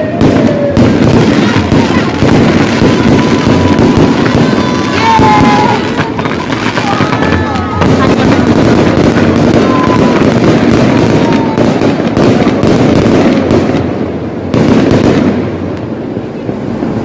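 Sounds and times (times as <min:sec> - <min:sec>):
falling firework whistle: 0:00.0 - 0:12.4
fireworks cracks and bangs: 0:00.0 - 0:17.0.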